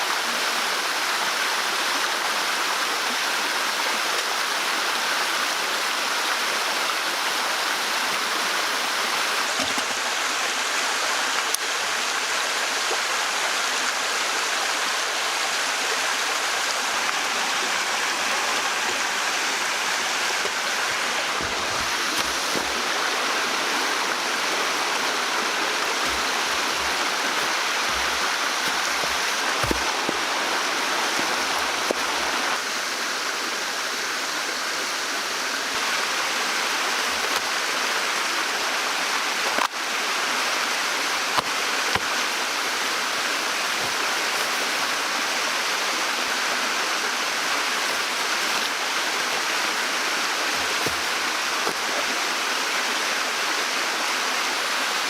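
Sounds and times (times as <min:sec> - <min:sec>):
flowing water rushing: 0:00.0 - 0:55.0.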